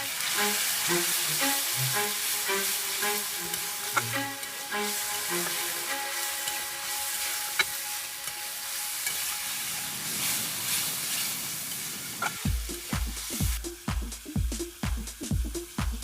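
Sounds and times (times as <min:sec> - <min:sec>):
food sizzling in a pan: 0:00.0 - 0:15.8
dance music with kick drum: 0:12.4 - 0:16.0.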